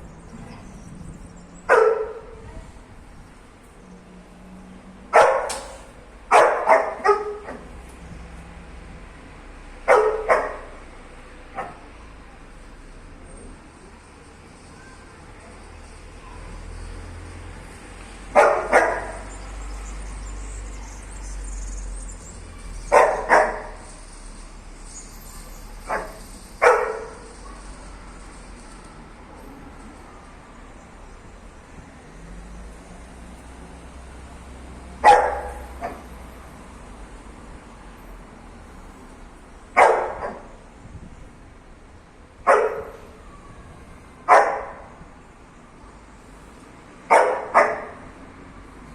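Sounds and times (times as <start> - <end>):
dog barking: 1.7 - 2.5, 5.1 - 7.6, 9.9 - 10.8, 11.6 - 11.9, 18.3 - 19.3, 22.9 - 23.8, 25.9 - 27.6, 35.0 - 36.1, 39.8 - 40.5, 42.5 - 43.1, 44.3 - 44.9, 47.1 - 48.1
dog yelp: 5.2 - 7.6, 18.4 - 19.2, 22.8 - 23.8, 25.8 - 27.6, 35.0 - 36.1, 42.5 - 43.1, 44.3 - 44.8, 47.1 - 48.0.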